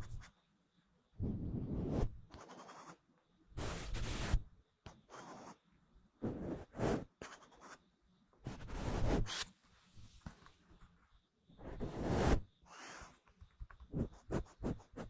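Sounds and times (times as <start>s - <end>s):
scratchy rubbing noise: 8.5s - 9.4s, 11.6s - 12.4s.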